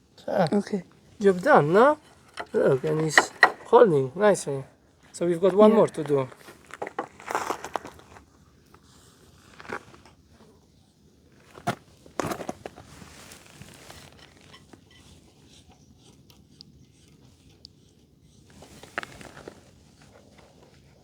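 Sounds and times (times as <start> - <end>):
small clicks and scrapes: 1.3 - 3.7, 6.4 - 10.4, 11.4 - 21.0.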